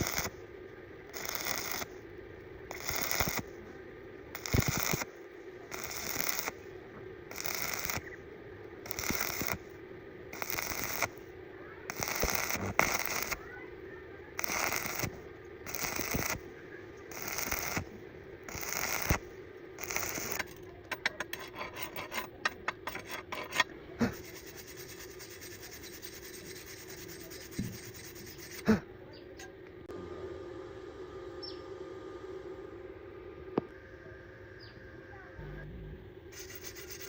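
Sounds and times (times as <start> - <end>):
steady hum: 0.0 - 37.0
hand scraping over metal: 19.8 - 28.6.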